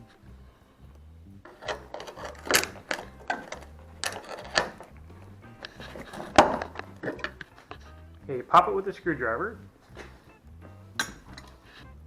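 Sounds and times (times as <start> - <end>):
metal clip snapping: 1.5 - 5.0, 5.6 - 7.5, 11.0 - 11.6
metallic clicks and scrapes: 1.5 - 7.8.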